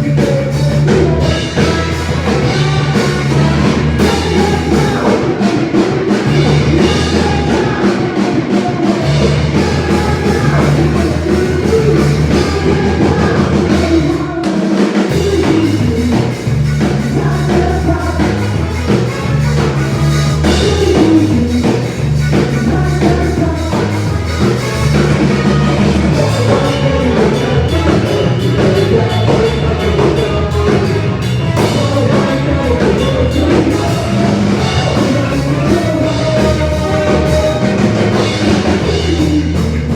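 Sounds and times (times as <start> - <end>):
bass guitar: 0.0 - 39.9
drum kit: 0.0 - 39.9
electric guitar: 0.0 - 39.9.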